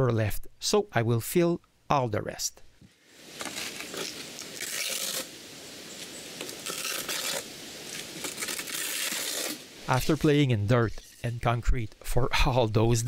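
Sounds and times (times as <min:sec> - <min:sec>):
trowel scraping mortar: 0:03.4 - 0:05.3, 0:06.6 - 0:11.5.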